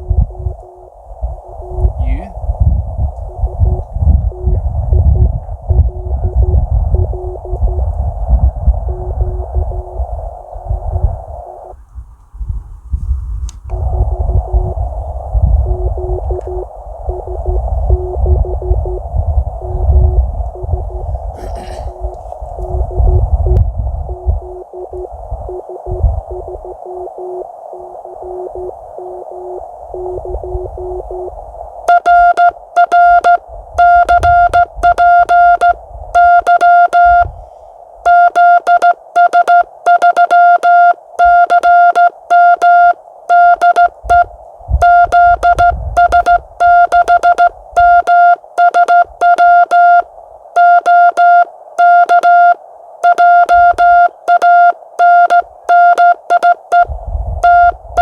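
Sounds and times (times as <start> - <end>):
faint low tone: 0.0 - 11.7, 13.7 - 37.4
receiver hiss: 0.0 - 11.9, 13.6 - 58.0
morse code tone: 3.4 - 7.9, 15.6 - 21.0, 22.6 - 31.3, 31.9 - 37.3, 38.0 - 58.0.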